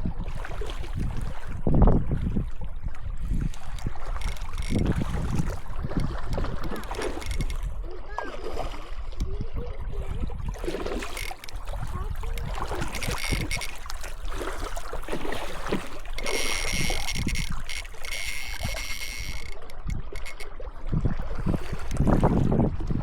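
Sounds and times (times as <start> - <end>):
wind rumbling on microphone: 0.0 - 23.0
high mechanical whirring: 12.9 - 13.8, 16.2 - 20.4.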